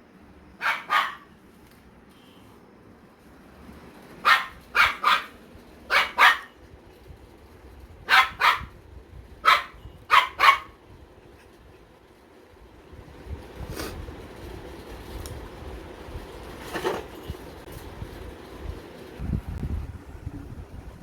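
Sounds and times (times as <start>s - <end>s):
puppy barking: 0.6s - 1.3s, 4.2s - 6.6s, 8.1s - 8.8s, 9.4s - 10.8s.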